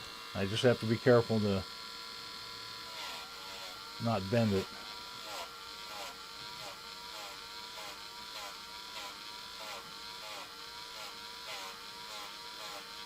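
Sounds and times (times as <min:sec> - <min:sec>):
rotary tool whining with wire brush: 0:00.0 - 0:13.0.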